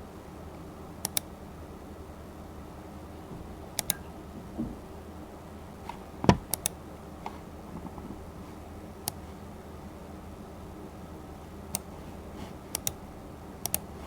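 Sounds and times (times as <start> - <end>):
faint room noise: 0.0 - 14.0
low steady hum: 0.0 - 14.0
dull thump: 6.2 - 6.5
sparse clicking: 12.7 - 13.0, 13.6 - 13.9
faint clicks: 13.6 - 13.9.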